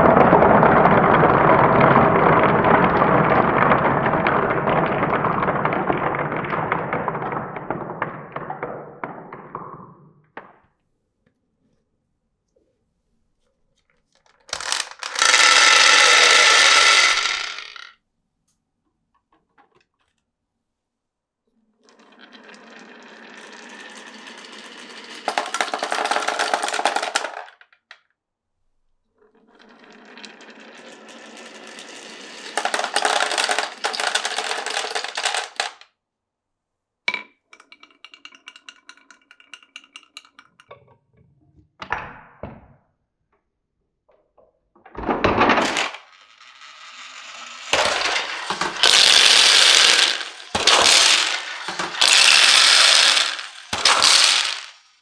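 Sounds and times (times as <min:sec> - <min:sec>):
marbles rolling on a track: 0:00.0 - 0:10.1, 0:14.3 - 0:18.0, 0:21.8 - 0:28.0, 0:29.4 - 0:35.9, 0:37.5 - 0:40.7, 0:44.9 - 0:55.0
marbles clicking on track: 0:14.4 - 0:17.9, 0:22.0 - 0:27.9, 0:29.6 - 0:35.8, 0:37.5 - 0:40.7, 0:45.0 - 0:55.0.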